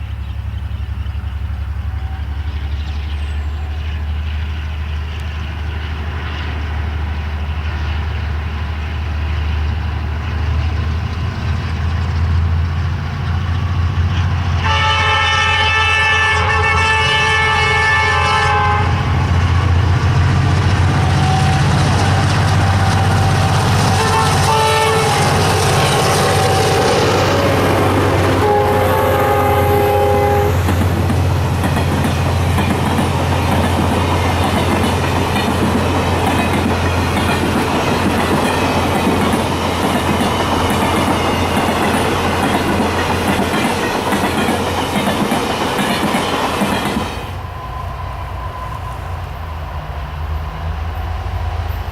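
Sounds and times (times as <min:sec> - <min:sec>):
diesel engine drone: 0:00.0 - 0:51.9
train horn chord blasts: 0:14.6 - 0:19.3, 0:22.7 - 0:30.7
wheels clicking over rail joints: 0:30.5 - 0:47.5.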